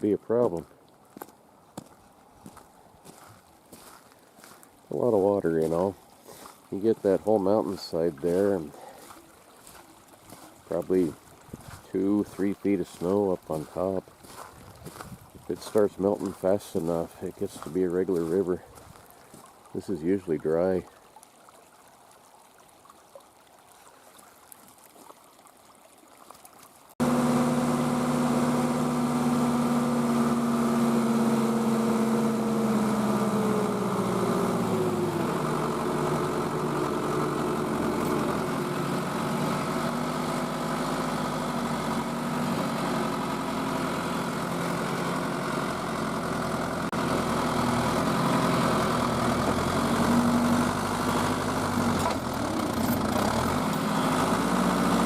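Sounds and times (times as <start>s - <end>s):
tractor engine running: 4.9s - 6.0s, 6.7s - 8.9s, 10.7s - 14.4s, 27.0s - 55.0s.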